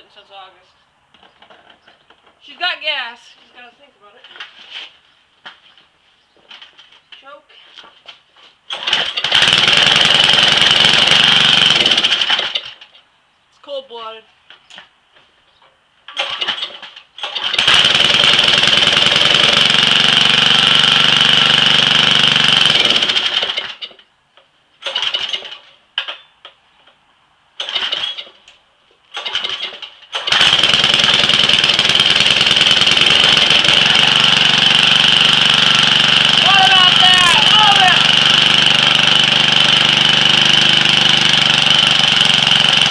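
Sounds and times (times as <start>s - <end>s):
pressure washer engine starting: 8.7s - 12.8s, 16.1s - 23.9s, 24.8s - 25.6s, 27.6s - 28.4s, 29.1s - 42.9s.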